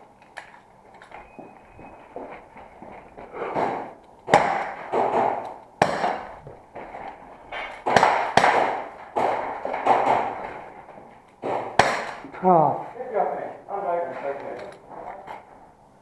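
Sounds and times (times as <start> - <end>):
airsoft revolver shots: 4.3 - 6.4, 7.8 - 10.2, 11.7 - 12.3.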